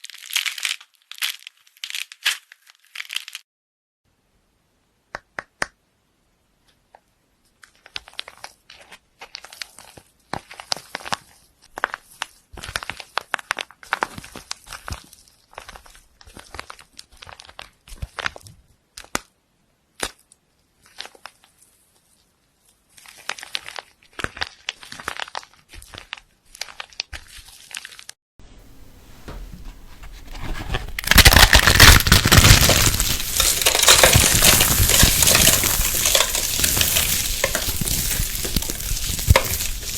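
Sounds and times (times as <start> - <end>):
slime crackling and crinkling: 0.0 - 3.4, 7.6 - 18.4, 20.0 - 28.2, 29.0 - 39.9
sizzling hiss: 32.8 - 39.9.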